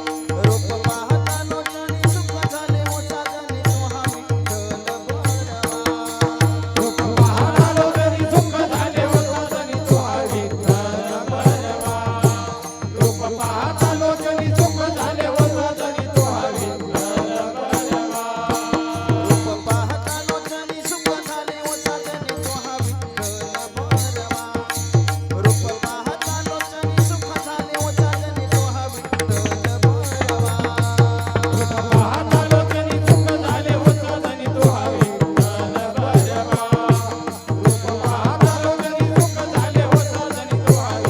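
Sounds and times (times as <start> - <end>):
devotional melody: 0.0 - 41.0
steady drum beat: 24.9 - 41.0.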